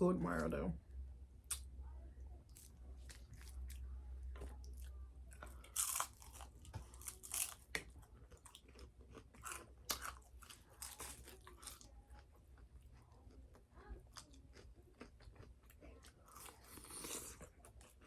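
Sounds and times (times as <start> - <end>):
crunchy chewing of fried chicken: 2.5 - 18.0.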